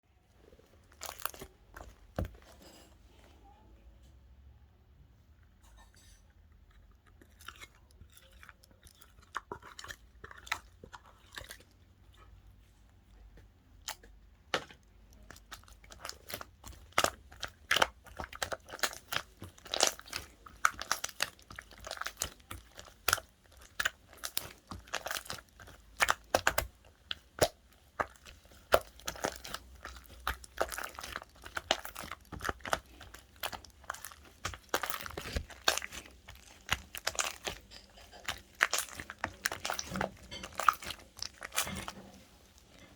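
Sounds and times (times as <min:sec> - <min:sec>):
slime popping and crackling: 0:13.9 - 0:42.9.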